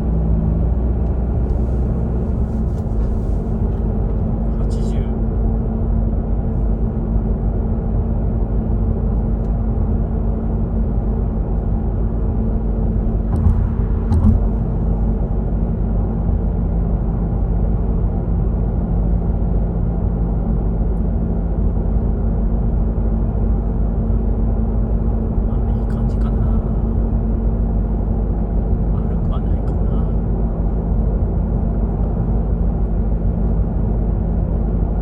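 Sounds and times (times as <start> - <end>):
droning hum: 0.0 - 35.0
road and engine rumble: 0.0 - 35.0
short thumps: 13.2 - 14.9.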